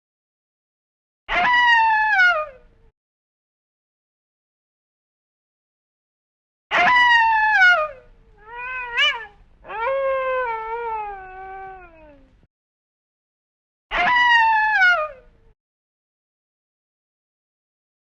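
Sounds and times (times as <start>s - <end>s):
wolf howling: 6.8s - 12.3s, 13.9s - 15.2s.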